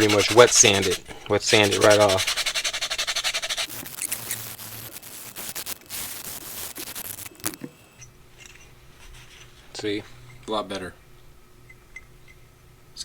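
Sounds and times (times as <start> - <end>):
sandpaper scraping metal: 0.0 - 7.3.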